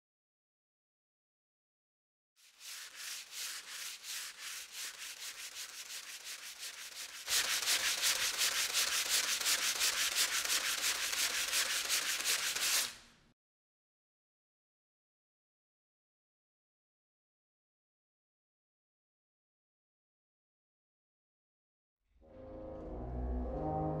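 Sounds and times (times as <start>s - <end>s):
sandpaper rubbing on wood: 2.4s - 13.0s.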